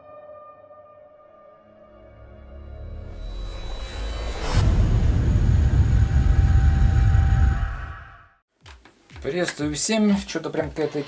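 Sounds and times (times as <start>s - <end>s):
deep rumbling sound effect: 2.8s - 8.4s.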